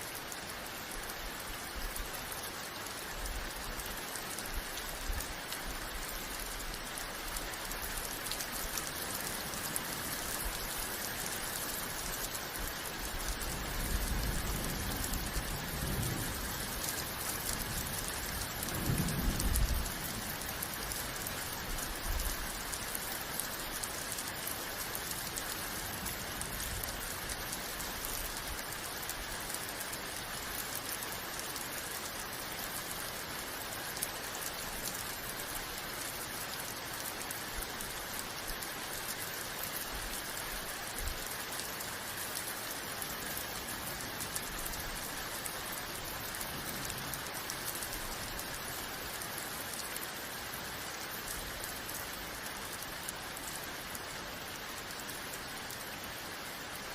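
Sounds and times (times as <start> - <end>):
heavy rain hissing: 0.1 - 56.9
thunder rumbling: 13.7 - 20.5.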